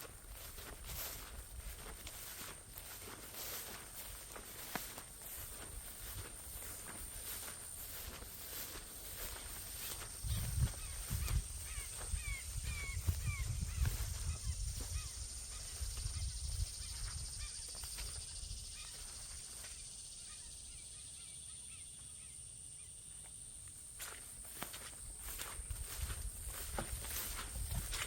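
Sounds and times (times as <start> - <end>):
footsteps on a trail: 0.0 - 19.8, 23.7 - 28.0
bird calling: 7.4 - 23.0.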